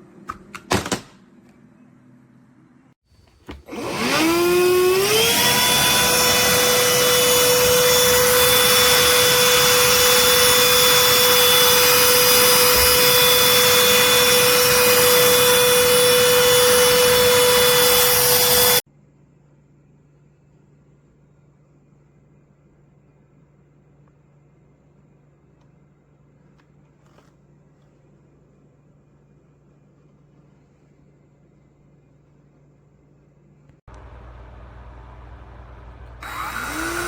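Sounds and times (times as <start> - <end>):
handheld vacuum motor whine: 3.2 - 18.8, 33.9 - 37.0.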